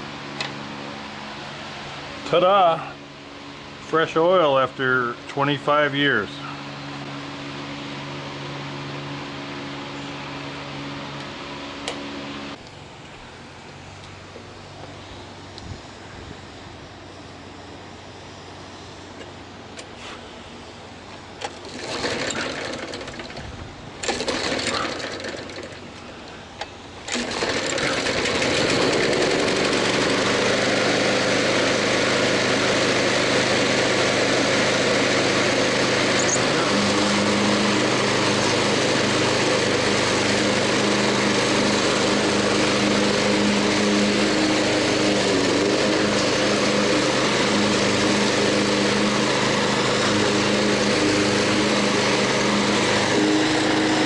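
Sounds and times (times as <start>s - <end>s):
lawn mower engine running: 0.0s - 54.0s
short noises: 21.4s - 54.0s.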